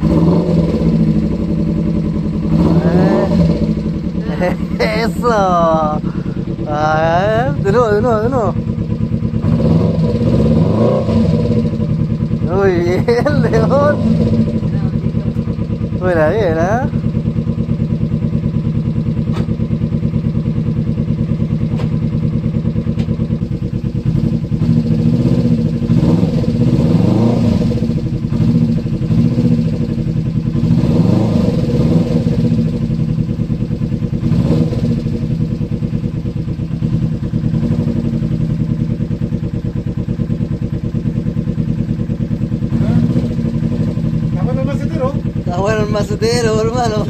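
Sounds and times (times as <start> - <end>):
motorcycle engine idling and revving: 0.0 - 47.0.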